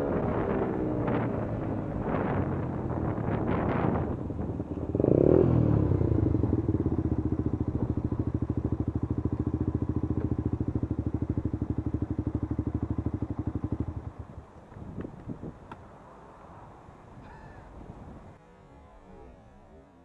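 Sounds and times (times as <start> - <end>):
two-stroke engine idling: 5.0 - 14.6.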